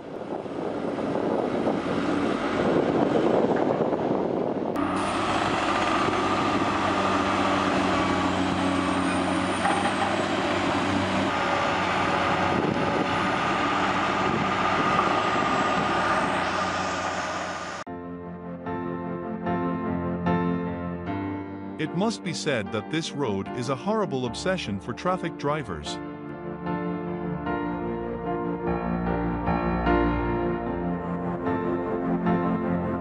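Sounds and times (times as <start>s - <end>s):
heavy vehicle engine under load: 0.2s - 17.8s.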